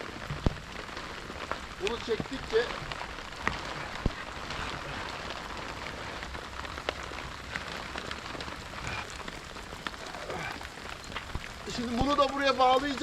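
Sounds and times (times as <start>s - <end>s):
heavy rain falling: 0.0s - 13.0s.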